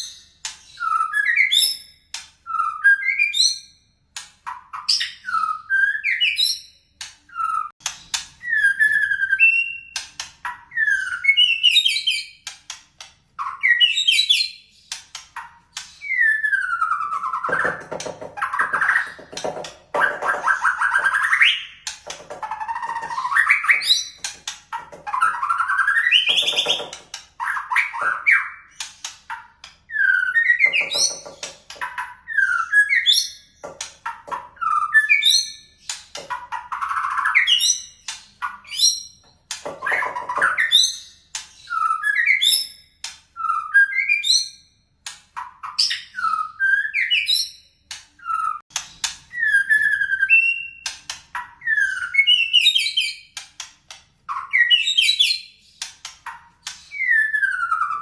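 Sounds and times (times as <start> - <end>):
bird singing whistled phrases: 56.9 - 58.0.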